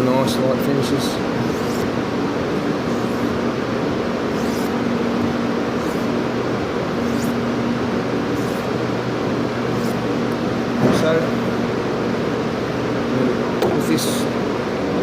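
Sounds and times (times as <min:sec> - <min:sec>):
steady humming background noise: 0:00.0 - 0:15.0
knife scraping on sharpening stone: 0:01.4 - 0:01.9, 0:04.3 - 0:04.8, 0:05.8 - 0:06.2, 0:07.0 - 0:07.4, 0:08.4 - 0:08.7.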